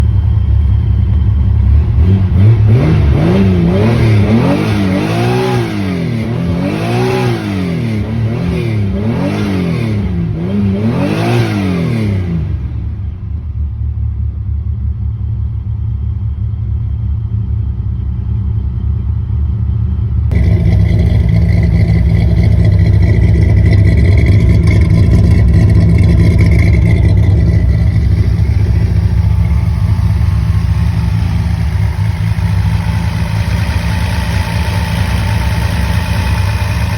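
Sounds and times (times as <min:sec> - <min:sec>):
car engine revving and idling: 0:00.0 - 0:36.9.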